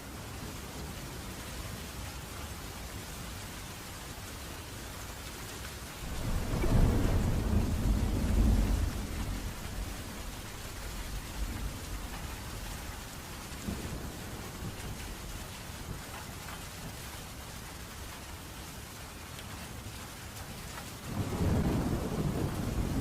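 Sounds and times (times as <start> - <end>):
steady rain: 0.0 - 23.0
thunder rumbling: 6.0 - 16.6, 21.0 - 23.0.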